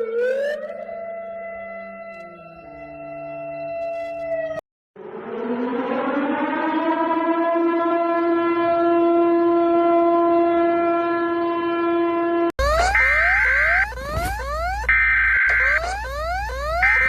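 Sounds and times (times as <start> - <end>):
warning siren winding up: 0.0 - 4.6, 12.6 - 17.0.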